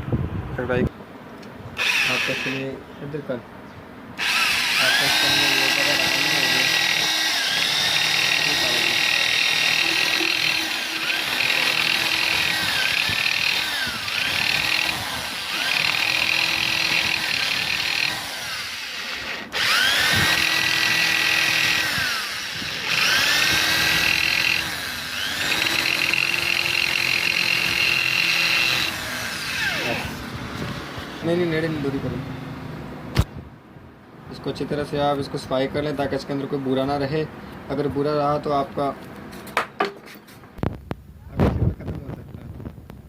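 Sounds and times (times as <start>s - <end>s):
handheld power tool whining: 1.8s - 2.7s, 4.2s - 31.2s.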